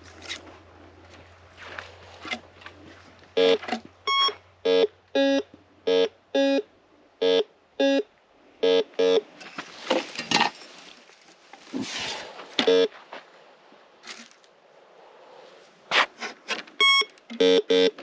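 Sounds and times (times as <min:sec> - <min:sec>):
metal detector beeps: 0:03.4 - 0:06.6, 0:08.6 - 0:09.2, 0:12.6 - 0:12.9, 0:16.8 - 0:18.0
rustling: 0:09.4 - 0:13.4.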